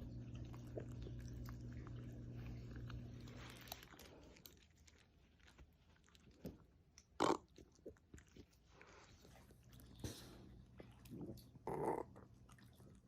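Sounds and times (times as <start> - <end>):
dog chewing: 0.0 - 13.0
dog burping: 11.2 - 12.2.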